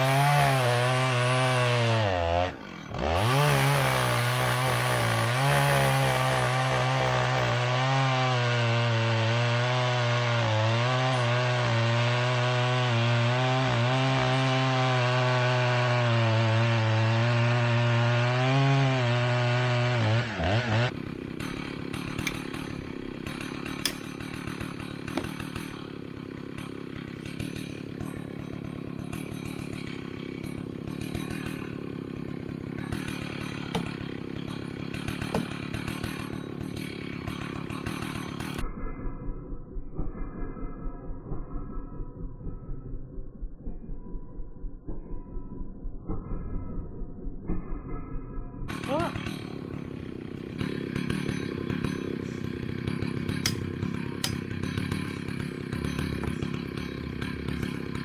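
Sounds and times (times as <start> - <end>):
chainsaw idling: 0.0 - 38.6, 48.7 - 58.0
chainsaw cutting wood: 0.0 - 38.9, 48.6 - 58.0.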